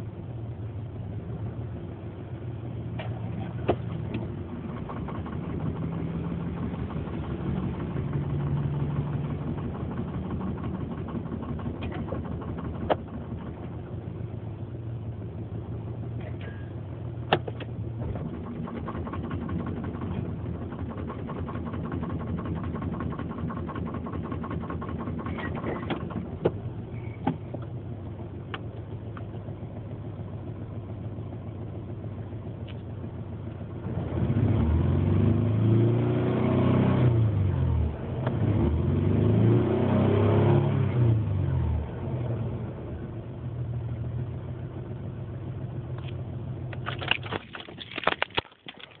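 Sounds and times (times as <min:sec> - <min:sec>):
car engine idling roughly: 0:02.7 - 0:33.8.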